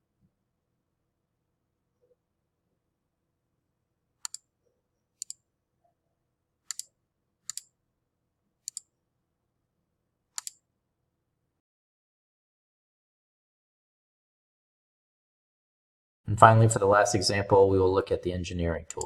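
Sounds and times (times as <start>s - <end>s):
computer mouse clicking: 4.2s - 4.5s, 5.2s - 5.4s, 6.7s - 6.9s, 7.5s - 7.7s, 8.6s - 8.9s, 10.4s - 10.6s.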